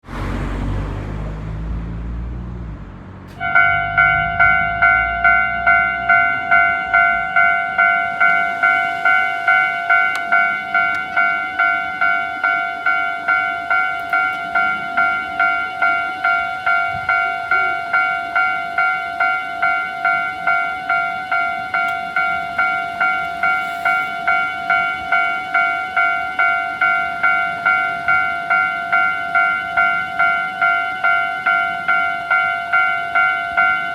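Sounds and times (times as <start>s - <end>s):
low rumble: 0.4s - 12.0s
level crossing warning bell: 3.3s - 33.9s.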